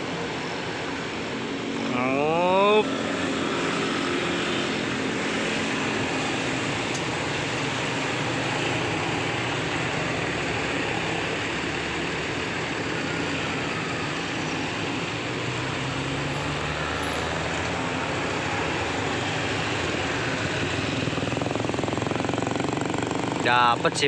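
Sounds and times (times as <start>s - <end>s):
heavy vehicle engine running: 0.0s - 24.0s
roadside traffic noise: 0.0s - 24.0s.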